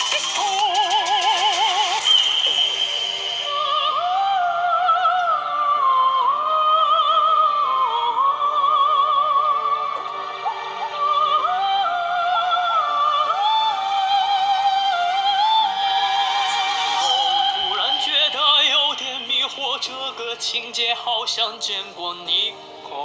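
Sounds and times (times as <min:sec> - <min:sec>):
soft steady accompaniment: 0:00.0 - 0:23.0
high wordless operatic vocal: 0:10.9 - 0:23.0.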